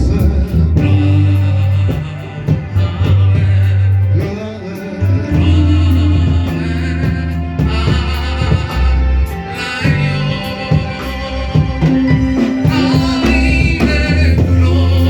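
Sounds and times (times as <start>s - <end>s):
gospel singing: 0.0s - 15.0s
heavy sustained bass line: 0.0s - 15.0s.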